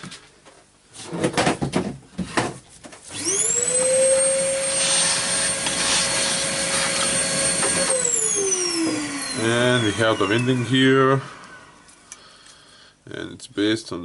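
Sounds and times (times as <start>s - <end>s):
electric motor whining: 3.1s - 12.0s.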